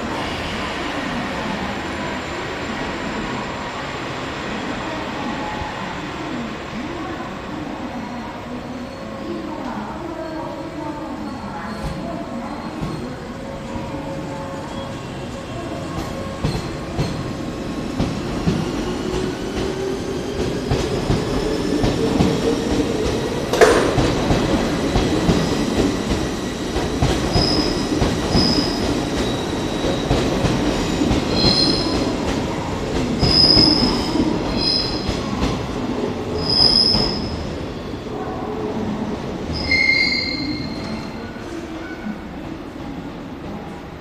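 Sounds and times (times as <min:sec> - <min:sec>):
high-pitched wheel squeal: 0:39.5 - 0:41.2.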